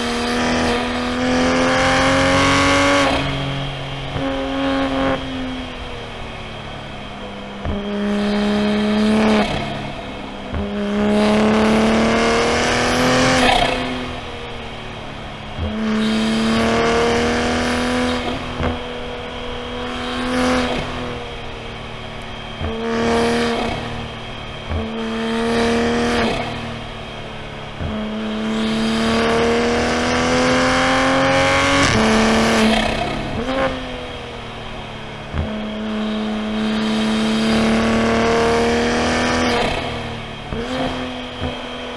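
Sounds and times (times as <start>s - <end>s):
car engine accelerating: 0.0s - 41.9s.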